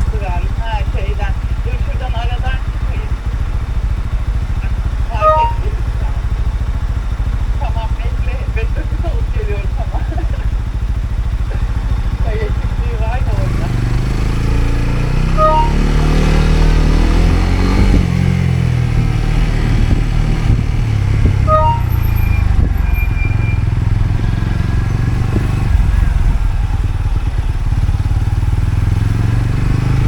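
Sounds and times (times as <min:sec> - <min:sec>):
motorcycle engine running: 0:00.0 - 0:30.0
three-note electronic beep: 0:05.2 - 0:06.0, 0:15.4 - 0:16.1, 0:21.5 - 0:22.4.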